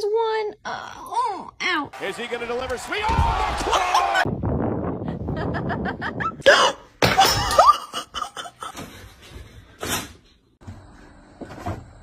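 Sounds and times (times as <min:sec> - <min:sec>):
person laughing: 0:05.1 - 0:08.8.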